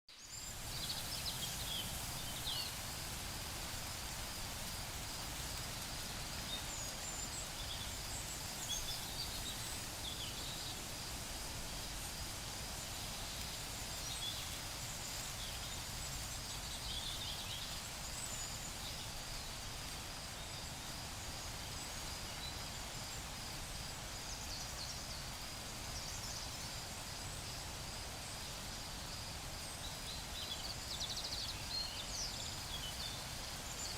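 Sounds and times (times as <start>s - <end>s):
low background hiss: 0.1s - 33.9s.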